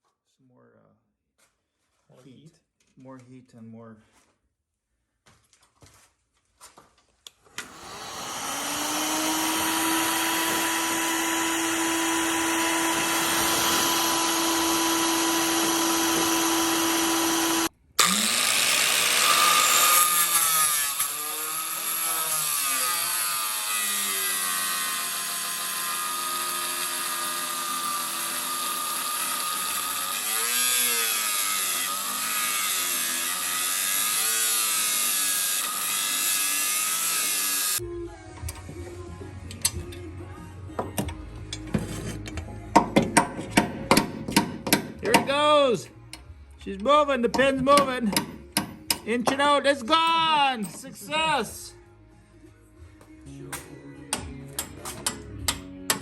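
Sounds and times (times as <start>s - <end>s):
electric grinder cutting steel: 7.5s - 37.8s.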